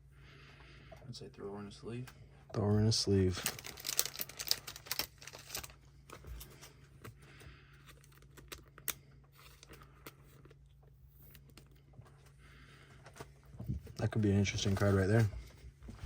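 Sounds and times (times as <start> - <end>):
trading cards crinkling in plastic: 3.2 - 7.1, 7.8 - 11.8.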